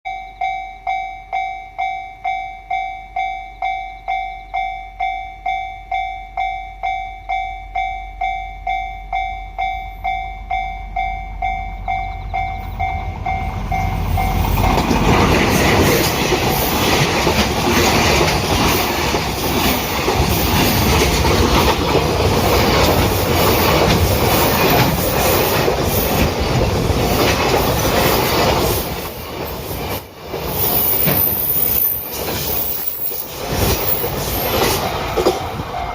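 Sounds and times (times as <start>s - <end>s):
freight train rumble and clatter: 10.4s - 35.9s.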